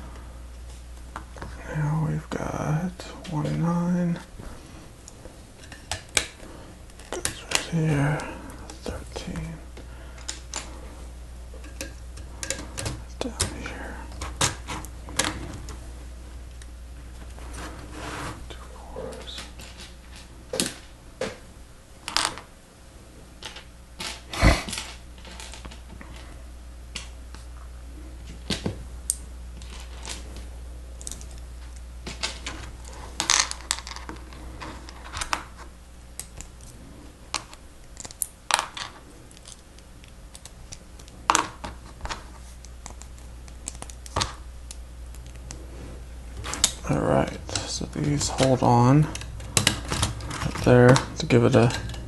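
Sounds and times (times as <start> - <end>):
low steady hum: 0.0 - 52.0
plastic pieces clicking and rattling: 33.2 - 35.5.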